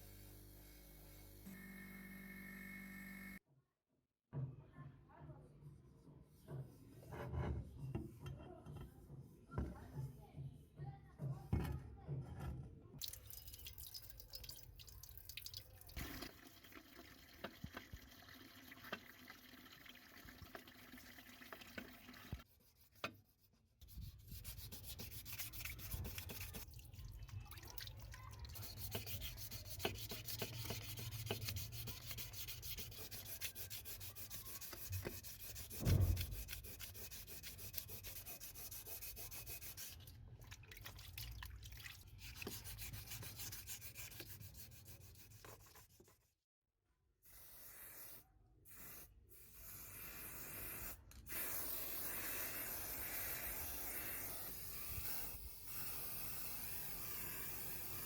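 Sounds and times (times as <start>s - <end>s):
scratchy sanding strokes: 22.4s - 26.7s, 28.4s - 40.0s, 42.2s - 46.1s
low thump: 35.8s - 36.4s.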